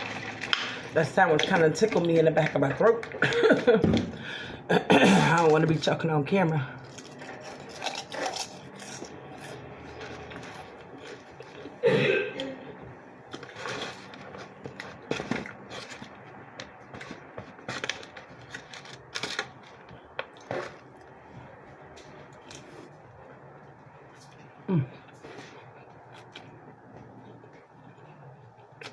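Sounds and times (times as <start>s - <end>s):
person coughing: 4.7s - 5.5s, 11.8s - 12.7s, 24.7s - 25.0s
chewing and mouth sounds: 24.0s - 28.9s.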